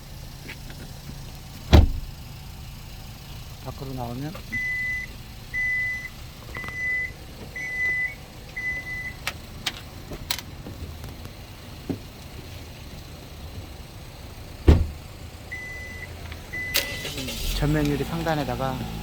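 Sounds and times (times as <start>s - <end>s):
heavy thump: 1.7s - 2.1s, 14.6s - 15.0s
car warning alarm beeping: 4.2s - 9.4s, 14.6s - 17.6s.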